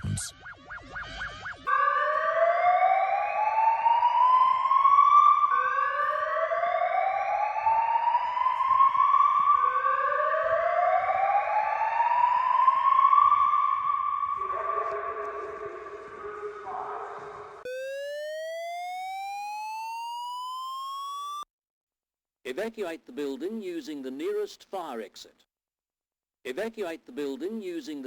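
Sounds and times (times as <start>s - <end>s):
rising warning siren: 0.0s - 21.5s.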